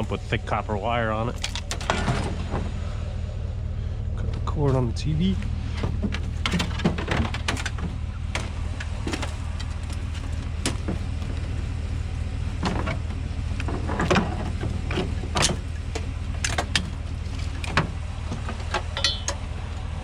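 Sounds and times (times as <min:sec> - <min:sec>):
vehicle engine idling: 0:00.0 - 0:20.0
scrap knocks and clanks: 0:05.6 - 0:11.7, 0:12.5 - 0:19.5.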